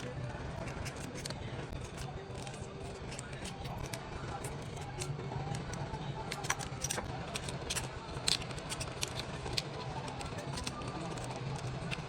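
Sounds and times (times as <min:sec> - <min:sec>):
repair tools clicking and tapping: 0:00.0 - 0:12.0.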